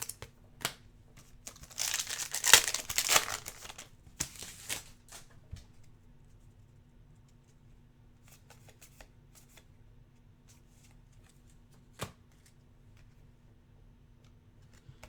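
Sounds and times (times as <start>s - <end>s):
trading cards flicking and rustling: 1.5s - 5.2s.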